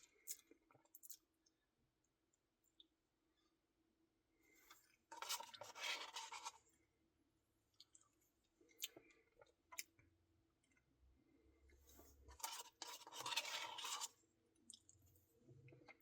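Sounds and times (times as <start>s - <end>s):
scraping crunching of ice cream: 12.3s - 14.2s.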